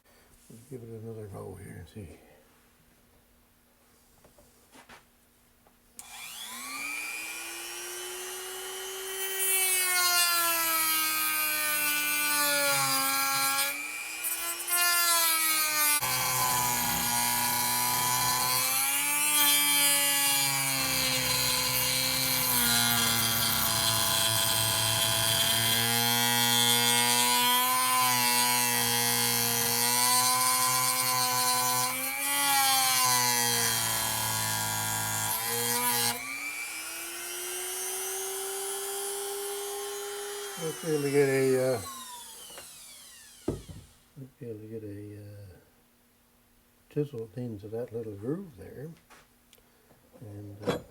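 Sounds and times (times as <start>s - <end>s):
rotary tool grinding metal: 12.4s - 36.3s.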